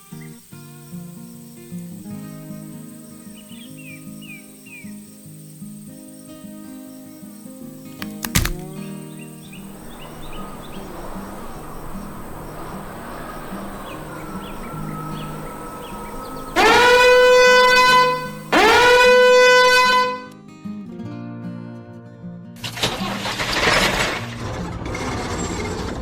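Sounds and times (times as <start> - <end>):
horn honks swooping up: 9.9 - 20.2.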